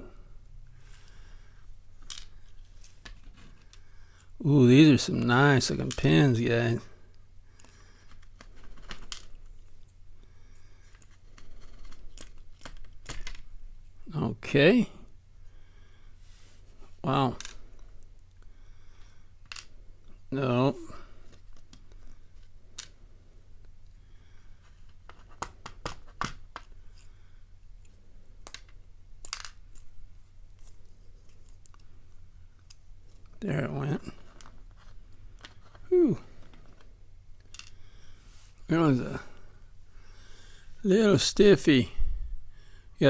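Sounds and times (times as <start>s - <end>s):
low steady hum: 0.0s - 43.0s
small metal parts clicking: 37.4s - 37.8s.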